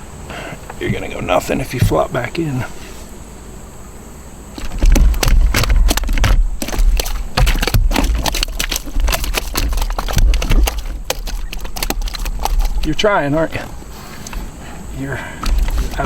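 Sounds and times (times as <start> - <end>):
fish flopping against plastic: 4.6 - 16.0.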